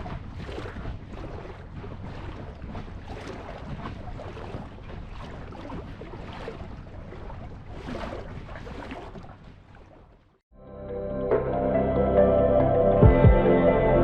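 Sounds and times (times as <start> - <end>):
water splashing against boat hull: 0.0 - 10.4.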